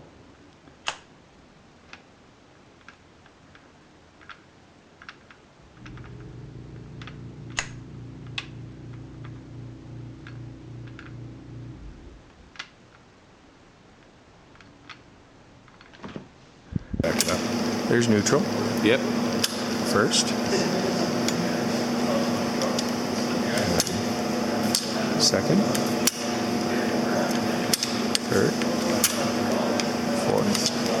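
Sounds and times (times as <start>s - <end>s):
low machine hum: 5.6s - 12.6s, 16.8s - 31.0s.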